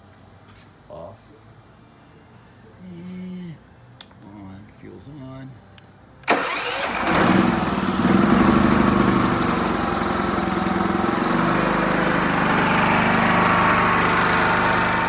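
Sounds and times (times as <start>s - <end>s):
generator engine starting and running: 6.2s - 15.0s.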